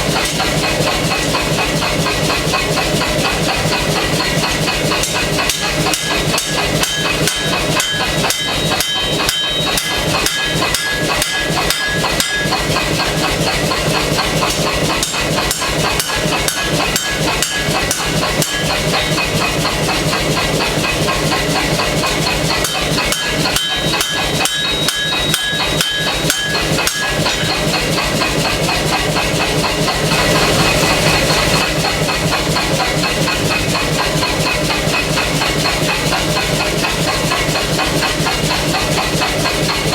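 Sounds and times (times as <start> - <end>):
air hammer pounding steel: 0.0 - 39.9
steady hum: 2.0 - 39.9
metal ringing: 5.5 - 13.8, 22.6 - 28.6.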